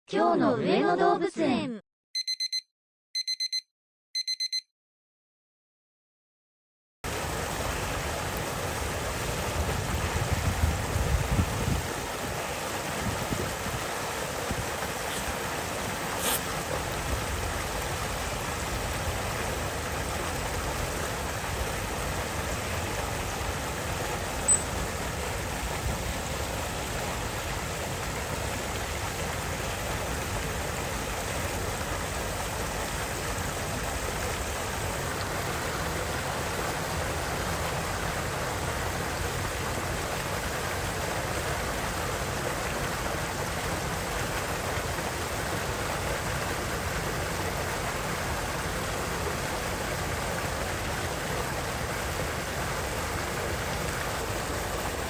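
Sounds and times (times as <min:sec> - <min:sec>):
high electronic beeps: 0:02.2 - 0:02.6, 0:03.2 - 0:03.6, 0:04.2 - 0:04.6, 0:24.4 - 0:24.8
running water rushing: 0:07.1 - 0:55.0.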